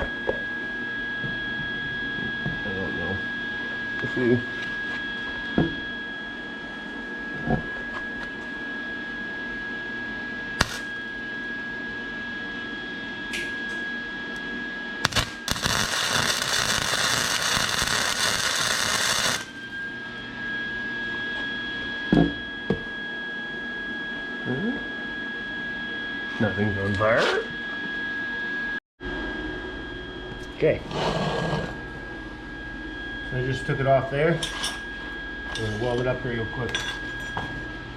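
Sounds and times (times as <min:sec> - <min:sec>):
high-pitched whine: 0:00.0 - 0:37.9
welding arc crackling: 0:10.6 - 0:10.9, 0:15.0 - 0:19.6.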